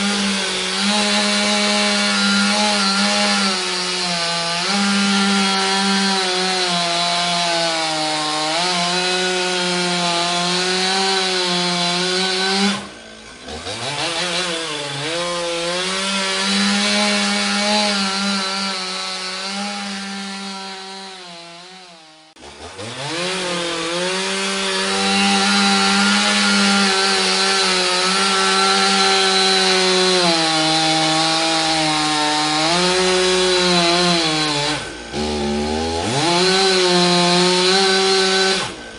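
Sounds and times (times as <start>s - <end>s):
chainsaw revving: 0.0s - 38.9s.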